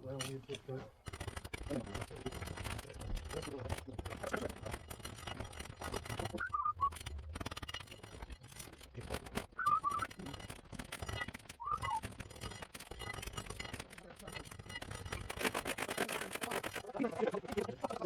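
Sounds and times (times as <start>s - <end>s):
faint clicking and rustling: 0.0s - 18.0s
whistled falling notes: 6.4s - 7.0s, 9.6s - 10.1s, 11.6s - 12.0s.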